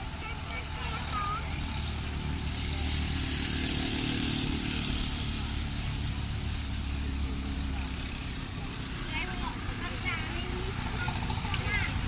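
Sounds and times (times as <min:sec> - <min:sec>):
heavy diesel engine running: 0:00.0 - 0:12.0.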